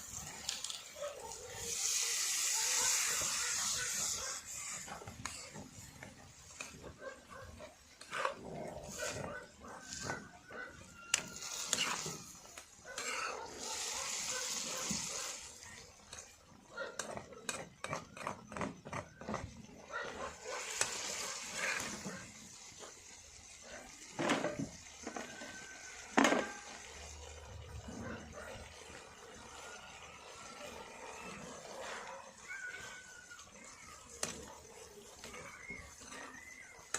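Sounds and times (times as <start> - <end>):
hiss: 0.0 - 6.7, 11.1 - 16.3, 20.4 - 24.8
spoon scraping metal pot: 13.0 - 13.4.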